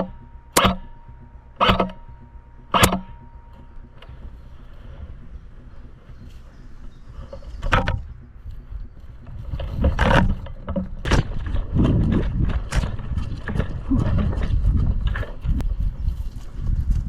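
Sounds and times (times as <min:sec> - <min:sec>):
sharp knocks: 0:00.0 - 0:04.2
low rumbling handling noise: 0:00.0 - 0:17.0.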